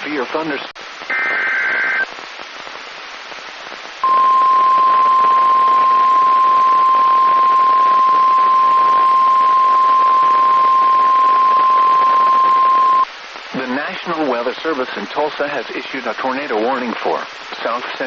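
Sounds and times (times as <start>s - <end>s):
radio static: 0.0s - 18.0s
steady alarm tone: 4.0s - 13.0s.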